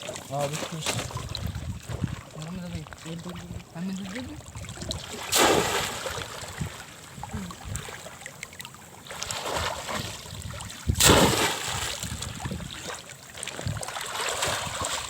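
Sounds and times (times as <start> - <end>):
shallow water sloshing: 0.0 - 15.0
loud splash of trap into water: 5.2 - 6.6, 10.9 - 12.2.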